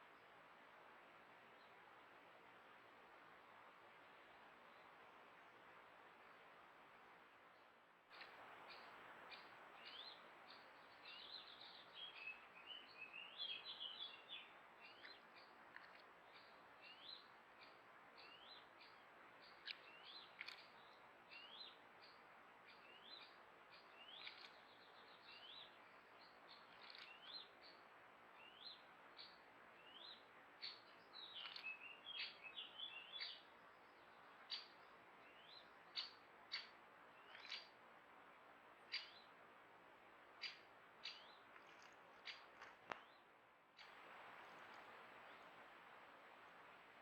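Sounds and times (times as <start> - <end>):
microphone hiss: 0.0 - 47.0
songbirds calling: 7.2 - 47.0.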